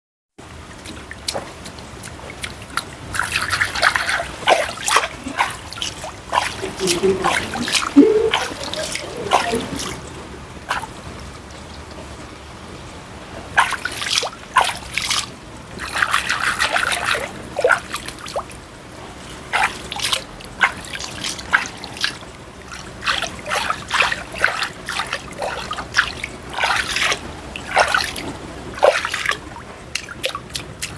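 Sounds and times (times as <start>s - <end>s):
pool water splashing: 0.4s - 30.9s.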